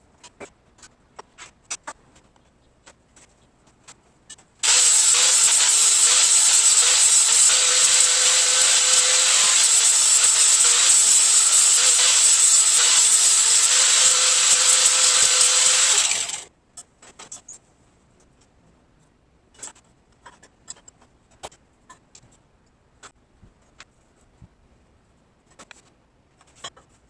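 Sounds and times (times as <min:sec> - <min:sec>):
power tool hissing and whining on metal: 0:04.6 - 0:16.5.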